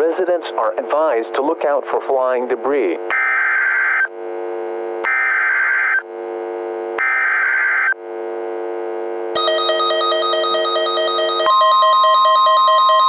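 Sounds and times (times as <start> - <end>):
harsh buzzing digital tones: 0.0 - 8.6, 9.3 - 13.0
warbling electronic alarm tone: 3.1 - 4.1, 5.0 - 6.0, 7.0 - 8.0, 9.4 - 13.0.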